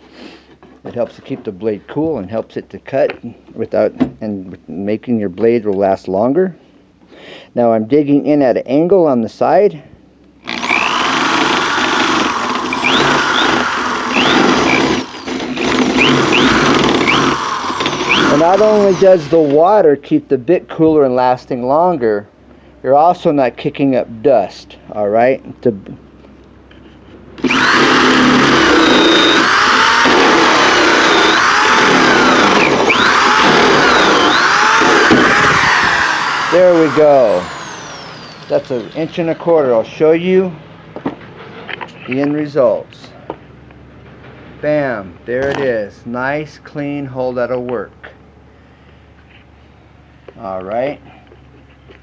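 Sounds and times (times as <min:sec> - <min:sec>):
drill grinding with motor whine: 0:10.4 - 0:19.6, 0:27.4 - 0:39.8
short rising squeaks: 0:11.7 - 0:19.0.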